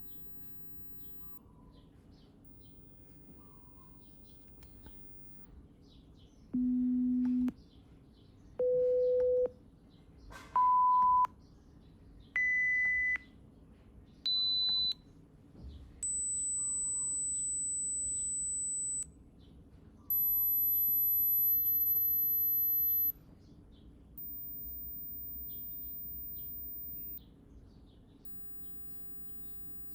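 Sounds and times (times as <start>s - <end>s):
rising pure-tone beeps: 0.0s - 1.4s, 16.0s - 19.1s, 20.1s - 23.1s, 24.2s - 27.2s, 28.3s - 29.9s
faint bird chirps: 0.0s - 5.5s, 15.8s - 19.1s, 20.0s - 23.2s, 24.2s - 29.9s.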